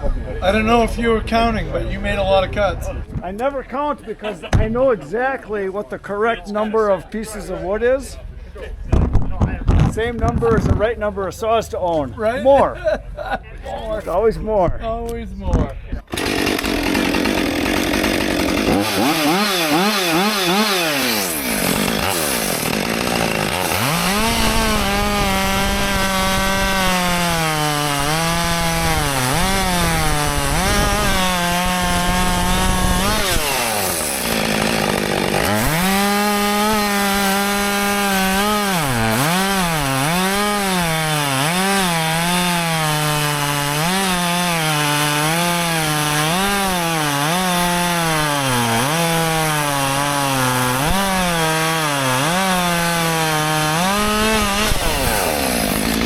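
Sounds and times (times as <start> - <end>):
chainsaw cutting wood: 16.1 - 56.0.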